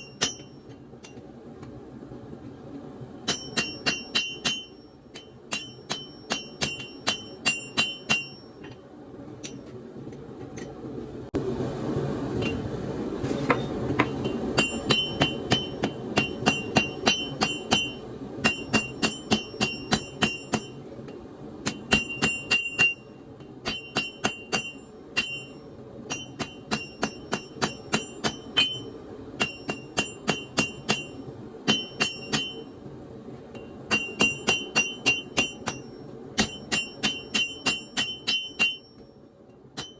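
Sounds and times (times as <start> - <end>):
hammer striking steel on anvil: 0.0 - 1.3, 3.2 - 8.8, 13.4 - 20.9, 21.6 - 32.8, 33.5 - 39.2
steady rushing noise: 0.0 - 39.4.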